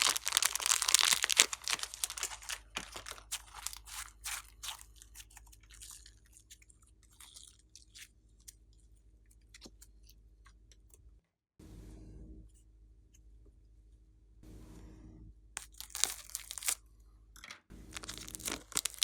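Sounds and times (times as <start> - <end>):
slime crackling and popping: 0.0 - 8.6, 15.6 - 16.8, 17.9 - 19.0.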